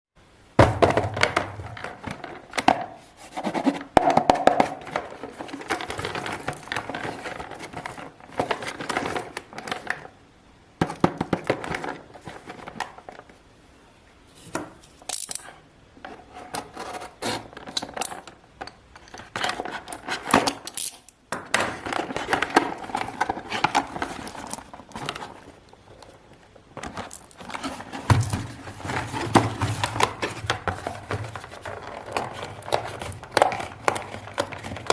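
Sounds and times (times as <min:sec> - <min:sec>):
foil wrappers crinkling: 0:04.7 - 0:10.1, 0:21.7 - 0:34.9.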